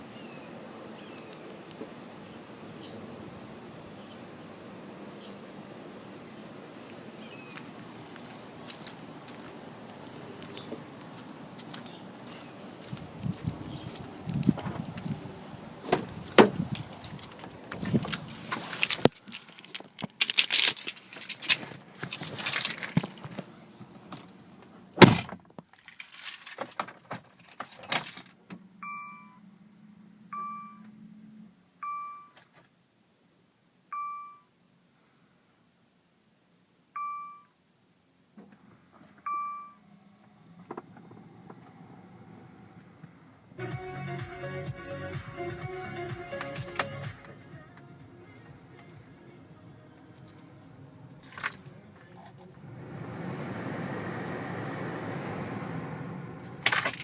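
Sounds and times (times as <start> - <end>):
keys jangling: 16.6 - 23.3, 25.8 - 28.3, 46.4 - 47.1, 51.2 - 51.7, 56.6 - 57.0
heavy thud: 25.0 - 25.4.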